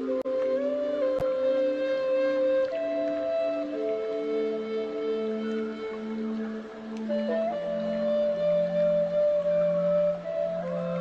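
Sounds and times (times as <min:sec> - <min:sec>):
slow ambient music: 0:00.0 - 0:11.0.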